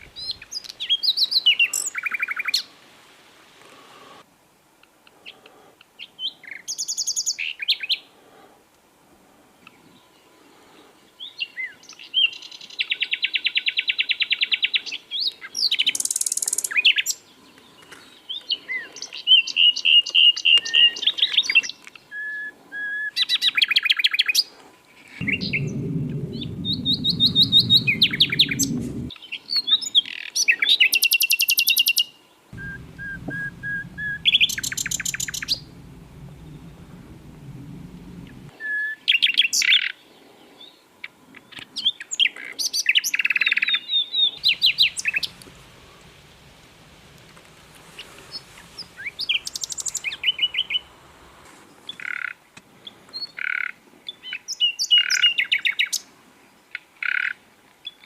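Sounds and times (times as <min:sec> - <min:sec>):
low hum: 0:25.2 - 0:29.1, 0:32.6 - 0:38.5, 0:44.4 - 0:51.4.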